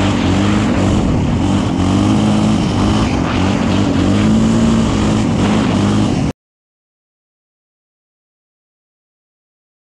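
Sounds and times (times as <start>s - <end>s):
off-road engine running: 0.0s - 6.3s.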